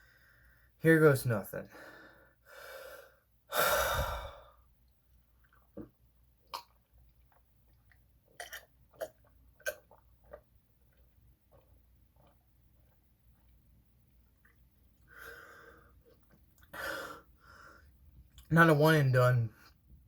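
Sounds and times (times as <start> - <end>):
person breathing loudly: 1.7 - 4.6, 16.7 - 17.9
gulping and swallowing: 5.4 - 13.6.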